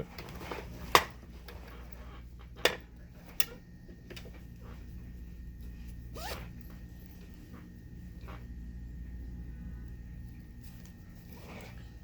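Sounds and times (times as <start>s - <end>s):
steady low hum: 0.0s - 12.0s
zipper clicks: 6.1s - 6.6s.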